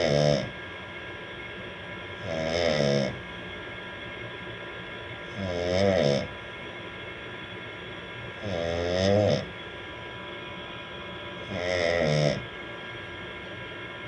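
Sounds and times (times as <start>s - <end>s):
man snoring: 0.0s - 0.6s, 2.2s - 3.2s, 5.3s - 6.3s, 8.4s - 9.5s, 11.4s - 12.5s
faint steady hum: 0.0s - 14.0s.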